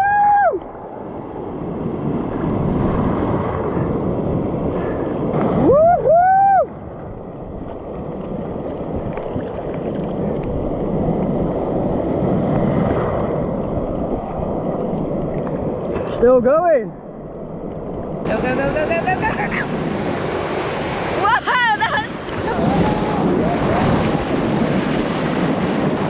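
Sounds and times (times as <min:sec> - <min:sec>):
person whooping: 0:00.0 - 0:00.6, 0:05.6 - 0:06.7, 0:21.2 - 0:24.4
wind on microphone: 0:00.0 - 0:16.3, 0:17.2 - 0:26.0
rushing water and surf: 0:00.0 - 0:26.0.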